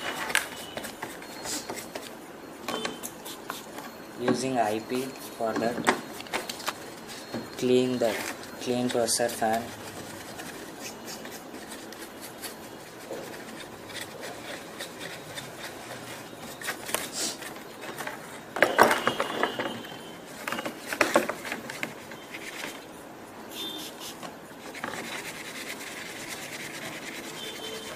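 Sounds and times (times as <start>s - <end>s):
rubbing and scraping fan: 6.8s - 18.5s, 19.2s - 22.9s, 23.8s - 27.9s.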